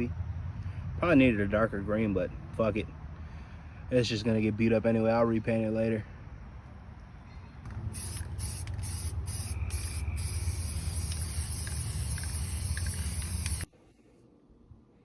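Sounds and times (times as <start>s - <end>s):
spray paint can hissing: 7.9s - 13.7s.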